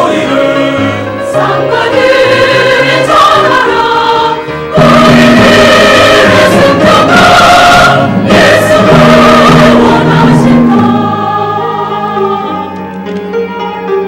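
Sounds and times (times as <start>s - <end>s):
church choir singing: 0.0s - 13.2s.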